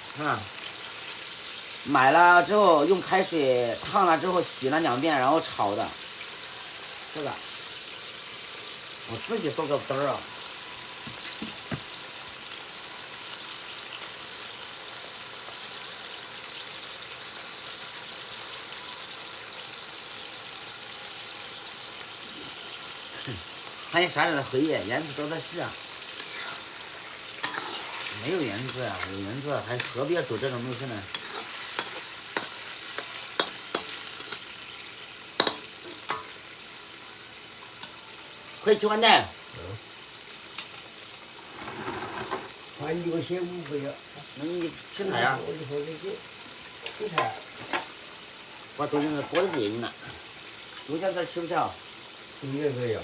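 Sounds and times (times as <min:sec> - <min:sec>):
food sizzling in a wok: 0:00.0 - 0:53.0
utensil clicking on pan: 0:27.4 - 0:29.2, 0:29.8 - 0:34.5, 0:35.4 - 0:36.4.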